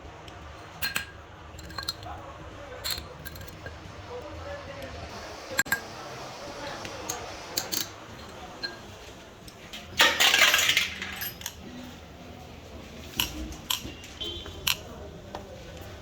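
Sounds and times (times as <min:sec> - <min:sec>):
metal parts clinking and knocking: 0:00.6 - 0:02.2, 0:02.8 - 0:03.9, 0:07.1 - 0:08.9, 0:09.8 - 0:11.8, 0:13.2 - 0:14.9.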